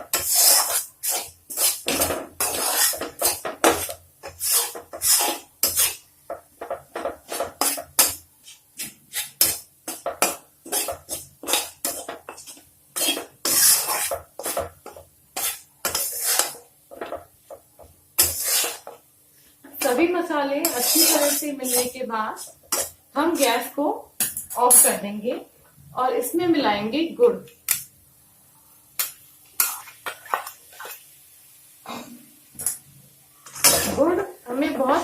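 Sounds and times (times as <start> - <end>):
spatula scraping a pan: 0.0 - 17.6, 18.2 - 19.0, 19.7 - 23.7, 29.6 - 30.9, 33.5 - 35.0.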